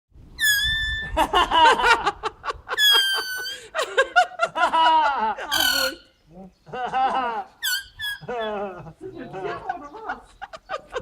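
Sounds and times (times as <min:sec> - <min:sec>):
grass blade whistle squeal: 0:00.4 - 0:01.2, 0:02.8 - 0:03.6, 0:05.5 - 0:06.1, 0:07.6 - 0:08.4
people laughing: 0:01.2 - 0:07.6, 0:08.2 - 0:11.0.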